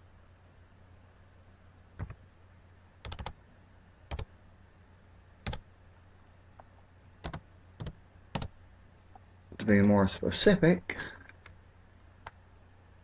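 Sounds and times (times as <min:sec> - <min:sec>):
faint low hum: 0:00.0 - 0:13.0
computer keys clicking: 0:02.0 - 0:02.2, 0:03.0 - 0:03.4, 0:05.4 - 0:05.6, 0:07.2 - 0:08.5.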